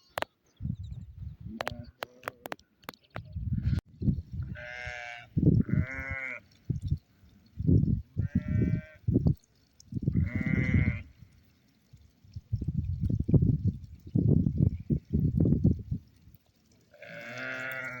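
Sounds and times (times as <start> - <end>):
sheep bleating: 4.5 - 6.4, 8.2 - 9.0, 10.2 - 11.1, 16.9 - 18.0.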